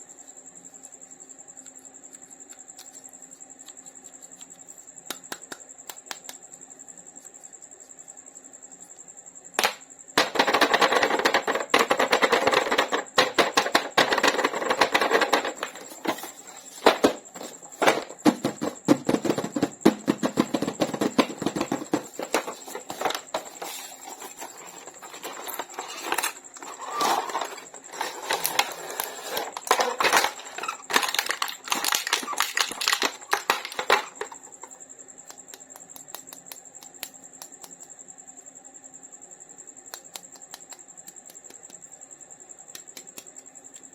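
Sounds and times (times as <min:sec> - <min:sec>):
packaging rustling and crackling: 0:21.2 - 0:34.4.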